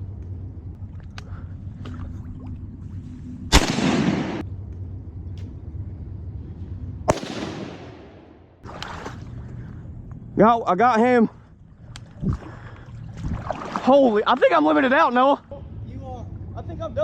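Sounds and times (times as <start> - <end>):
shotgun shots with echo: 3.5 - 4.4, 7.1 - 8.4.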